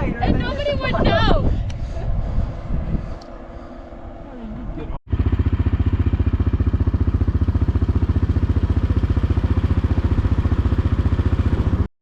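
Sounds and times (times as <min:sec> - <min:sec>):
atv engine chugging: 0:05.1 - 0:11.9.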